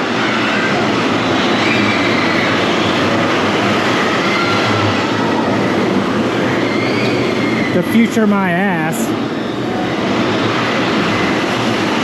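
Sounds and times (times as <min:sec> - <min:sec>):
faint high squeals: 0:00.2 - 0:08.1.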